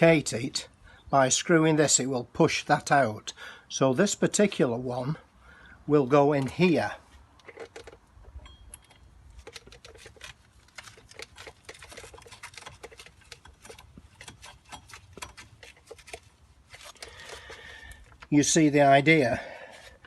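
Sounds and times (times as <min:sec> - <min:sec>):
small metallic clicks and taps: 0:07.4 - 0:16.3.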